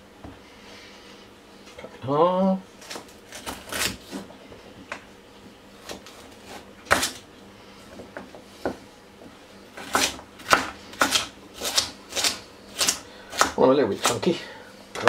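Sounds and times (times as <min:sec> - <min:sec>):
knife chopping carrots on board: 0:05.8 - 0:07.2, 0:09.8 - 0:14.3.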